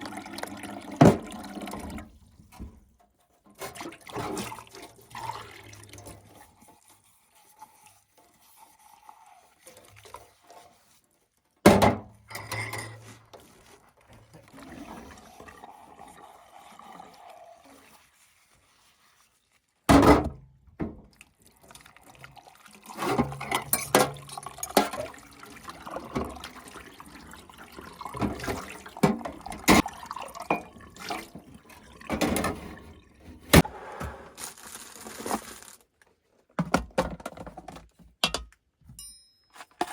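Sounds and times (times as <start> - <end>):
water pouring: 0.0 - 2.7, 3.6 - 11.0, 12.4 - 19.8, 21.1 - 33.7.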